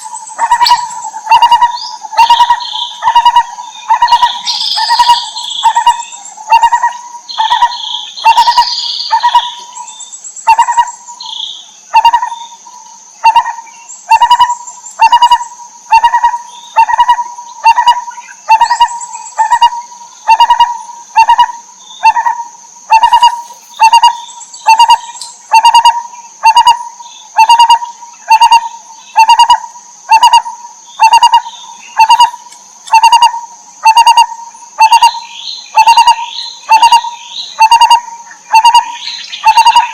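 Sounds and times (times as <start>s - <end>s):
barbet low mellow call: 0.0s - 9.8s, 13.2s - 39.9s
higher bird chirps: 0.0s - 15.5s.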